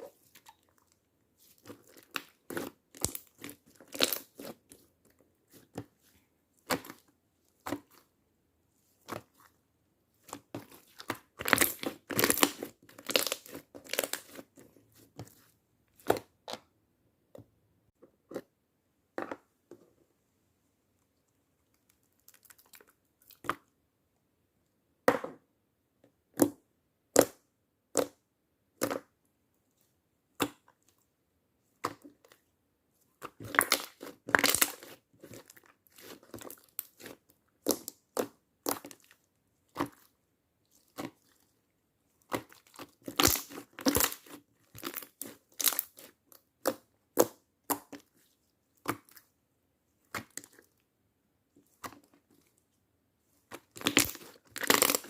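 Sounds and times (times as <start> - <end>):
slime clicking and popping: 42.3 - 48.0, 53.7 - 55.0.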